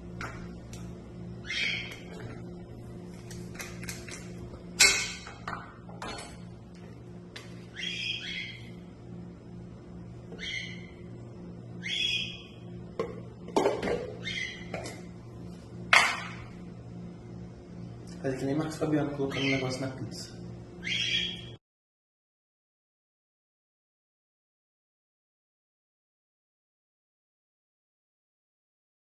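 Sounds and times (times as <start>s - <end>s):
steady low hum: 0.0s - 21.6s.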